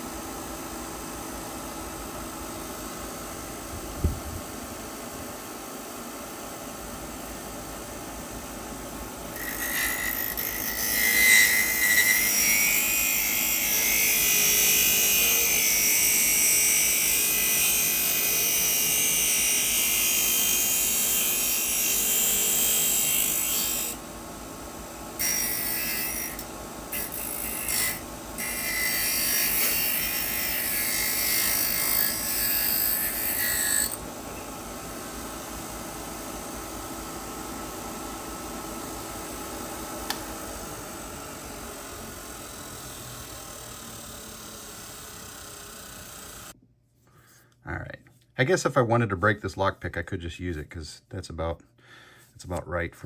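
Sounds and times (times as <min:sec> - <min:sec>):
grinder grinding metal blade: 0:09.4 - 0:24.0, 0:25.2 - 0:34.0, 0:41.5 - 0:46.6.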